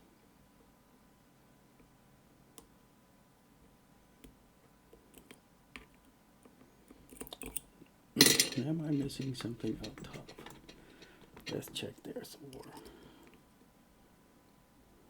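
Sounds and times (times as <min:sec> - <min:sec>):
lock pick clicking pins: 0:07.1 - 0:11.6.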